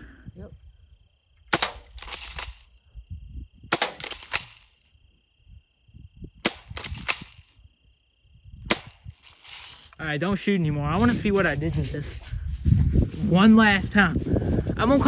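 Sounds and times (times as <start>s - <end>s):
air gun shots: 1.5s - 2.6s, 3.7s - 4.7s, 6.4s - 7.5s, 8.7s - 9.9s.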